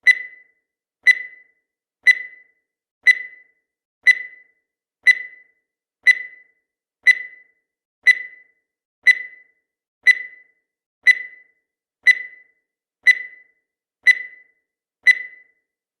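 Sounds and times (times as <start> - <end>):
short high timer ticks: 0.0 - 15.6.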